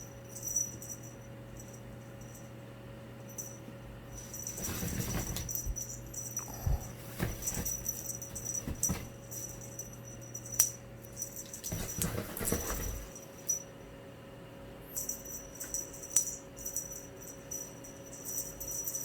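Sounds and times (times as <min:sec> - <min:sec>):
toy rustling against cat tunnel: 0:04.2 - 0:09.9, 0:11.1 - 0:13.2.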